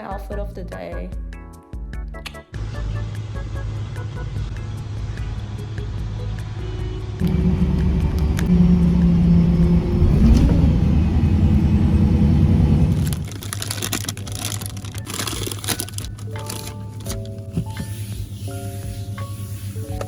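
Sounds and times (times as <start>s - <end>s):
road noise: 2.6s - 15.1s
car engine rumble: 2.6s - 16.2s.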